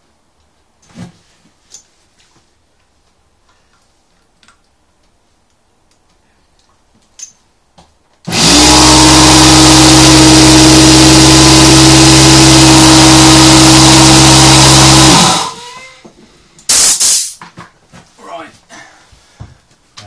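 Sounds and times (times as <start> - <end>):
air compressor running: 8.3 - 15.7.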